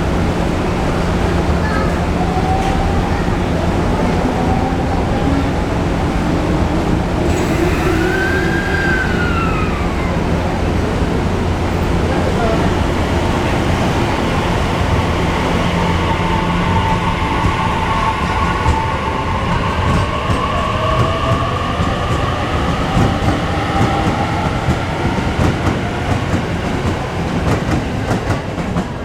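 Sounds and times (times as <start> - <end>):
electric train motor whine: 3.8 - 25.3.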